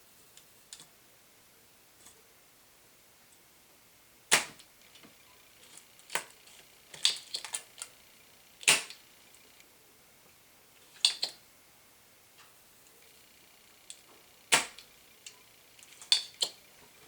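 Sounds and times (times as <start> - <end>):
desoldering pump snap: 8.6 - 9.0, 13.9 - 16.6
small clicks and knocks: 10.8 - 11.4, 12.4 - 17.0.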